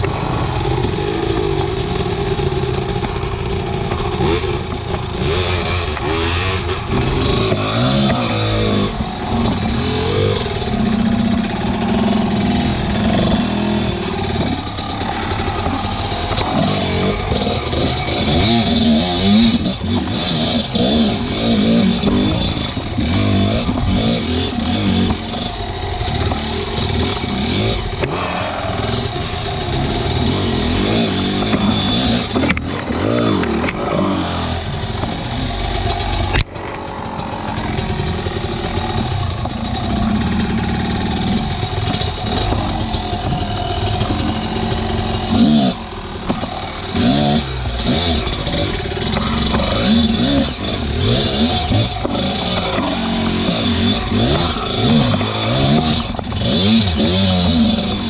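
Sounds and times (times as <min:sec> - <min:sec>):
dirt bike engine revving: 0:00.0 - 0:58.0.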